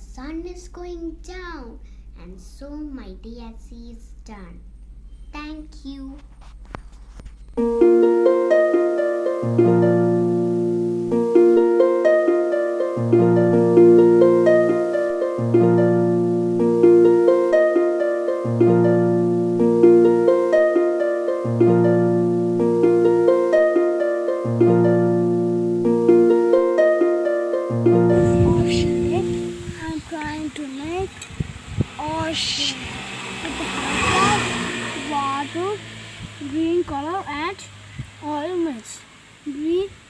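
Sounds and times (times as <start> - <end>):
plucked harp-like notes: 7.3 - 31.3
repeating bass line: 27.8 - 38.8.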